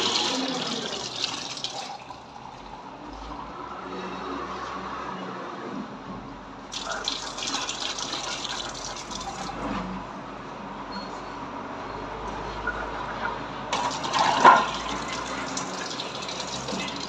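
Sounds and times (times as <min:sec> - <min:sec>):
water running from tap: 0:00.0 - 0:03.3, 0:06.7 - 0:09.6, 0:13.8 - 0:17.0.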